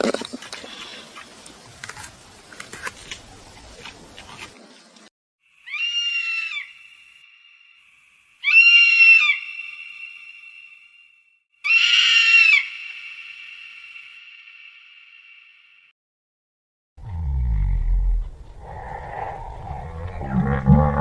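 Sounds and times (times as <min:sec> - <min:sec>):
animal screaming: 0:05.7 - 0:06.7, 0:08.4 - 0:09.4, 0:11.6 - 0:12.7, 0:18.6 - 0:21.0.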